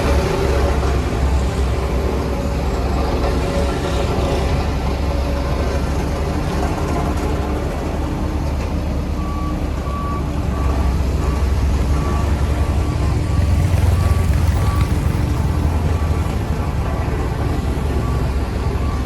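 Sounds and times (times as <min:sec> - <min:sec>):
diesel machinery engine rumble: 0:00.0 - 0:19.0
reversing alarm beeping: 0:09.0 - 0:19.0.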